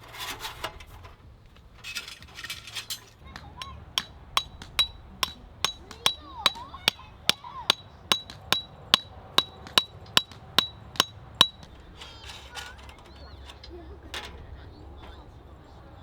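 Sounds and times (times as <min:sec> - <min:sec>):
metallic hammer strikes: 0:03.4 - 0:13.6.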